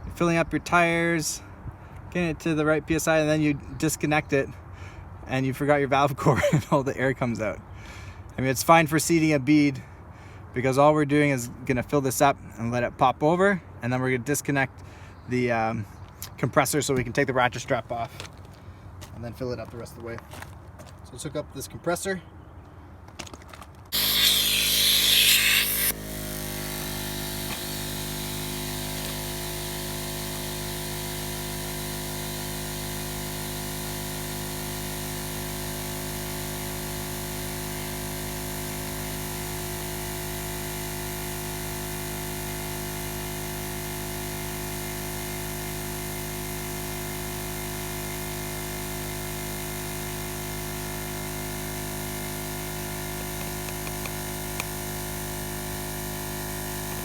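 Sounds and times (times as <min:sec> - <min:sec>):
loud hiss of air: 0:23.9 - 0:30.5
air compressor running: 0:23.9 - 0:57.0.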